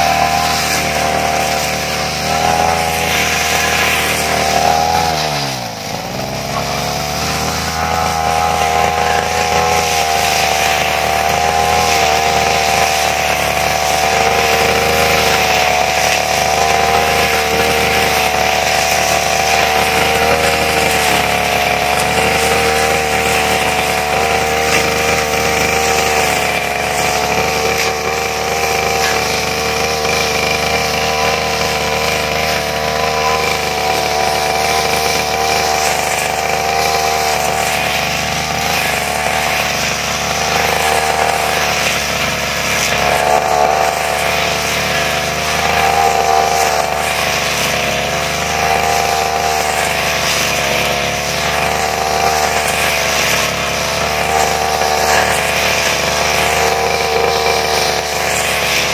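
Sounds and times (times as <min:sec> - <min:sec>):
brush cutter cutting grass: 0:00.0 - 0:58.9.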